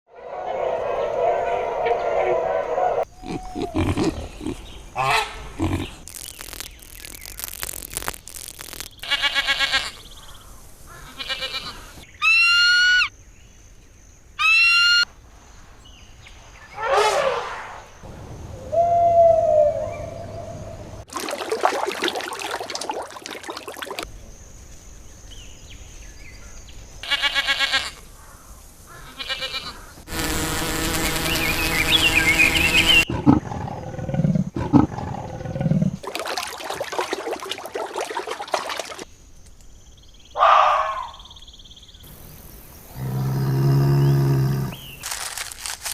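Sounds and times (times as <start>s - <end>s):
animal calls: 0.3s - 6.0s, 40.4s - 41.2s.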